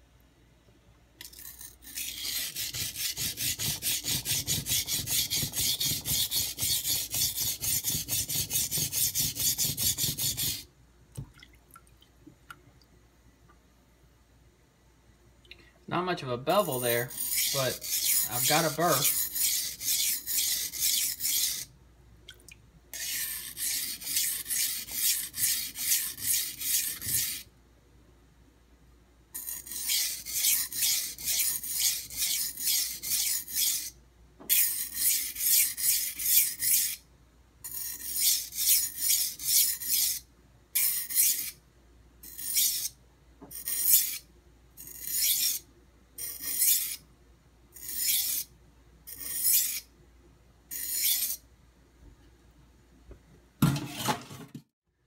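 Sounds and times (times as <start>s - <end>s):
knife scraping on whetstone: 1.3s - 10.7s, 16.6s - 21.7s, 23.0s - 27.5s, 29.4s - 37.0s, 37.7s - 41.6s, 42.2s - 47.0s, 47.8s - 48.5s, 49.1s - 49.9s, 50.7s - 51.4s.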